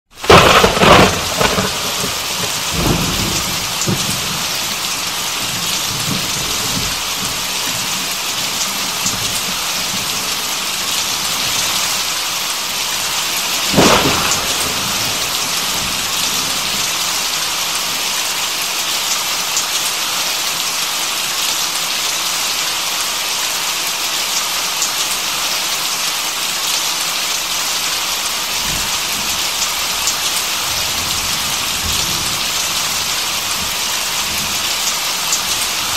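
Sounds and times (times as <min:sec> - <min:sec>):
rain falling: 0:00.1 - 0:35.9
sharp thunderclap: 0:00.2 - 0:04.8, 0:13.6 - 0:17.0
thunder rumbling: 0:00.2 - 0:12.1, 0:13.1 - 0:17.3.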